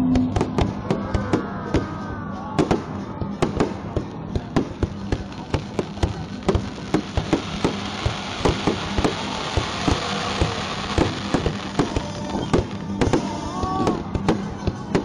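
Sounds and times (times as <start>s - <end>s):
fireworks bangs: 2.6s - 15.0s
fireworks crackling hiss: 3.5s - 14.6s.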